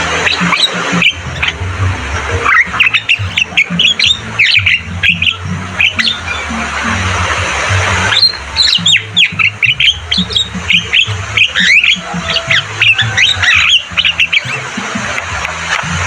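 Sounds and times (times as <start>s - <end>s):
myna squawks and whistles: 0.0s - 15.8s
low pulsing tones: 0.0s - 16.0s.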